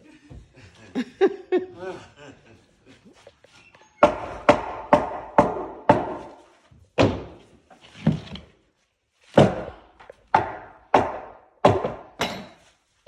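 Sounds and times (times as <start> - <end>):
hammer nailing into wood: 4.0 - 6.4, 7.0 - 7.4, 9.4 - 12.7.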